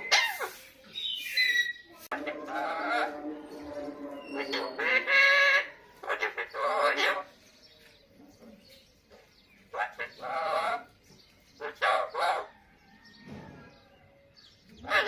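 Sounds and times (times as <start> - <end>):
parakeet talking: 1.4 - 7.3, 9.7 - 10.9.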